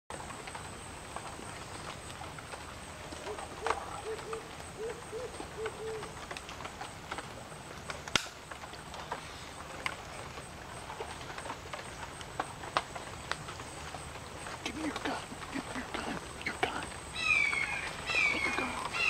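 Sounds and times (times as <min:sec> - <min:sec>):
faint clicks and rustles: 0:00.1 - 0:19.0
short hooting calls: 0:15.5 - 0:19.0.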